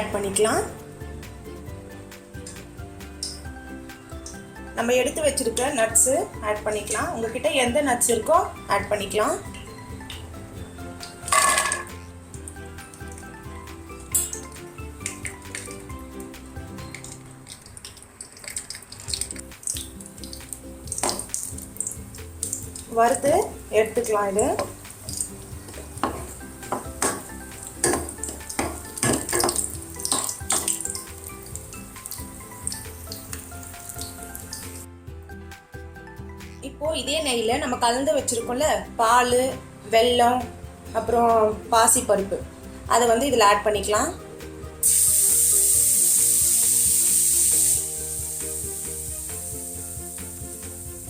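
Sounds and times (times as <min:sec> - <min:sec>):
soft background music: 0:00.0 - 0:51.0
nuts sizzling in a pan: 0:10.7 - 0:16.2, 0:16.9 - 0:34.9, 0:44.8 - 0:51.0
spoon scraping a pan: 0:11.2 - 0:12.0.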